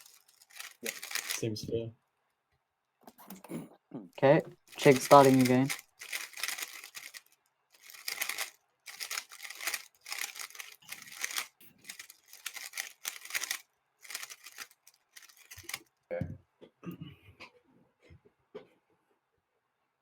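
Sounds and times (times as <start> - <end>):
speed cube clicking: 0.0 - 1.4, 4.7 - 15.8.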